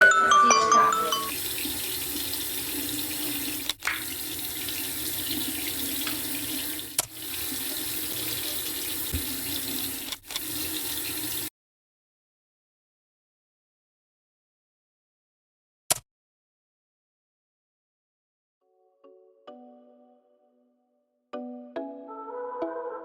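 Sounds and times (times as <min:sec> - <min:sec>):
water running from a tap: 0:01.1 - 0:11.5.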